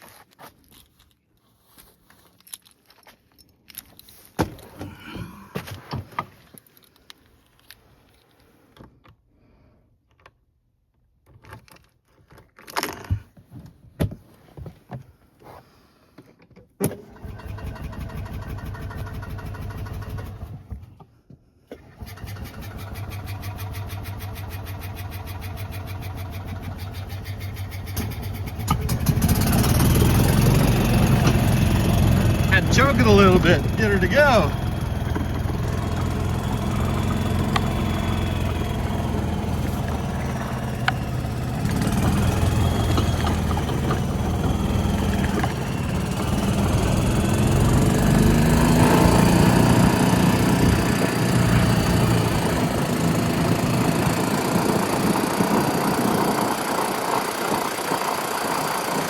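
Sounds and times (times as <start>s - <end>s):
golf cart engine turning over: 16.8s - 20.7s, 21.7s - 59.0s
golf cart engine running: 16.9s - 20.6s, 21.8s - 59.0s.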